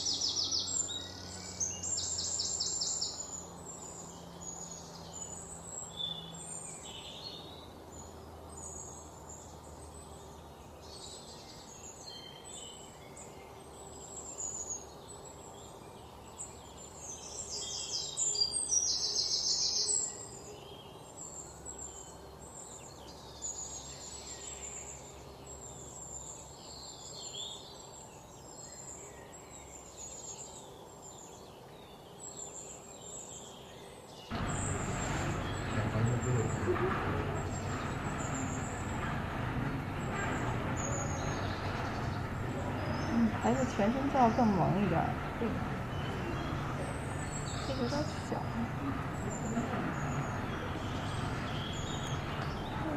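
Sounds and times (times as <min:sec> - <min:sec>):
small birds chirping: 0:00.0 - 0:52.9
high bird trill: 0:34.3 - 0:52.9.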